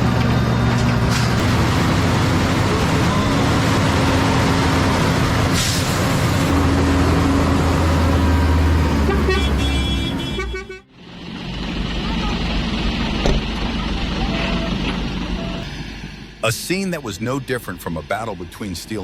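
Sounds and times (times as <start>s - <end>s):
heavy vehicle engine running: 0.0s - 19.0s
short horn tone: 9.1s - 10.9s.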